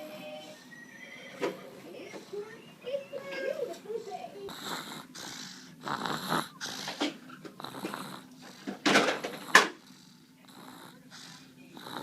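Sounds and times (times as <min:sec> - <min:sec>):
pet snoring: 0:04.4 - 0:12.0.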